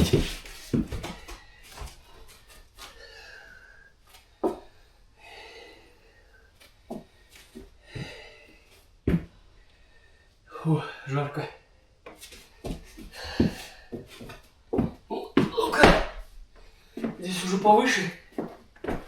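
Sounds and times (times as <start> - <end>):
man breathing heavily: 0.0 - 11.1, 12.4 - 15.1.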